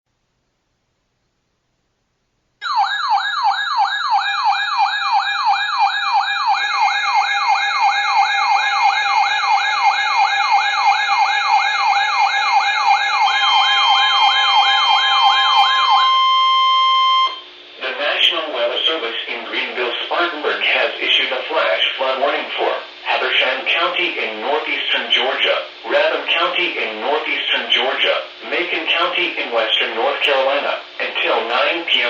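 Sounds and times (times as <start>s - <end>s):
rising siren-like alarm tone: 2.6s - 17.4s
high beeping tones: 2.6s - 17.5s
steady alarm tone: 2.6s - 17.6s.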